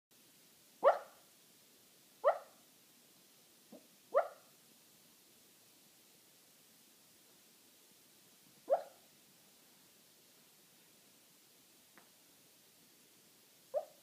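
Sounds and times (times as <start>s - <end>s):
puppy yipping in sleep: 0.8s - 1.2s, 2.2s - 2.6s, 4.1s - 4.5s, 8.7s - 9.0s, 13.7s - 14.0s.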